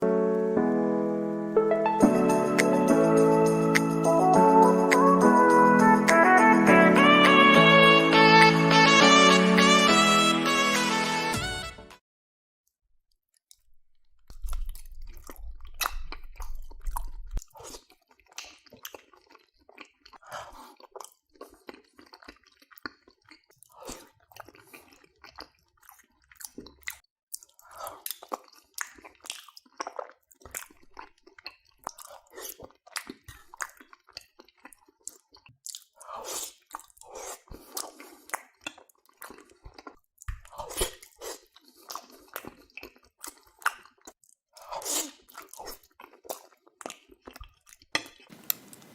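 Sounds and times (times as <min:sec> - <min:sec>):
wet chewing and smacking: 0:13.3 - 0:48.9.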